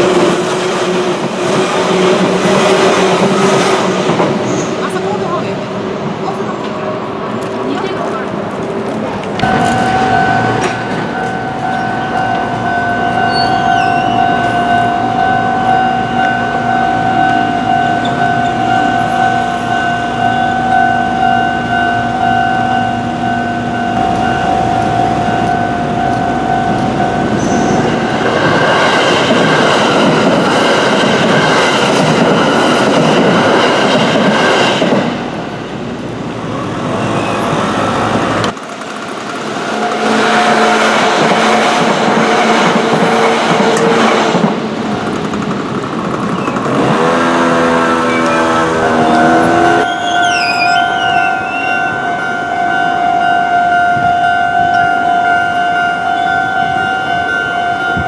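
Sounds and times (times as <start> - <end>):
train passing: 0.0 - 58.0
steady ringing signal: 9.4 - 28.1.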